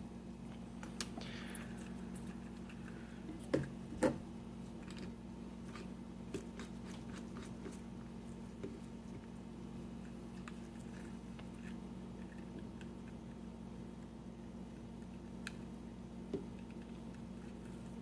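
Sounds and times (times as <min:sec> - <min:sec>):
low electrical hum: 0:00.0 - 0:18.0.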